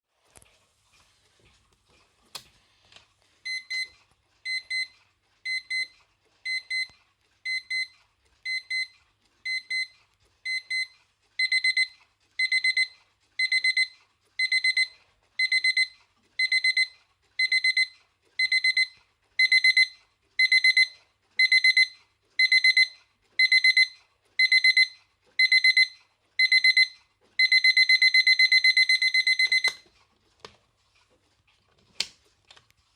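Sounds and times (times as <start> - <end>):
alarm clock beeping: 3.5 - 29.8.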